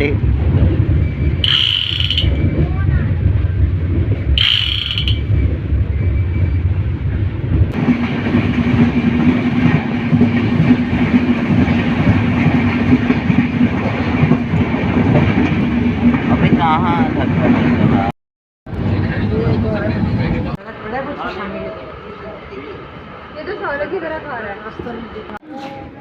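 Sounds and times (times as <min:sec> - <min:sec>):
rattling rail noise: 0:00.0 - 0:18.1
train rumble: 0:00.0 - 0:18.1, 0:18.7 - 0:26.0
high-pitched squeal: 0:01.4 - 0:02.4, 0:04.4 - 0:05.4.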